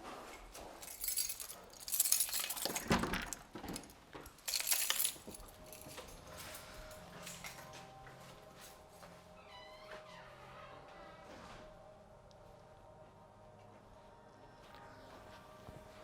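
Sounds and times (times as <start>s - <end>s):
clinking and jangling: 0.6s - 7.8s.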